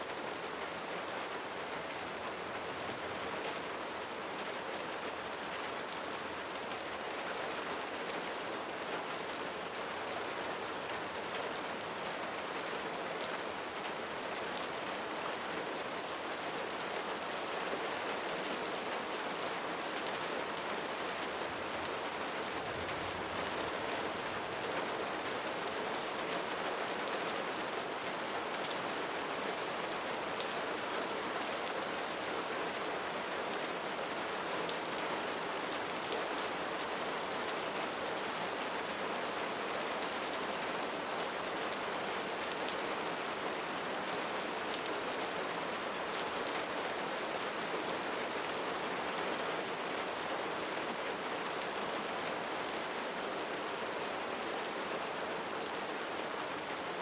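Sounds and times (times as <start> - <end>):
rain falling on leaves: 0.0 - 57.0.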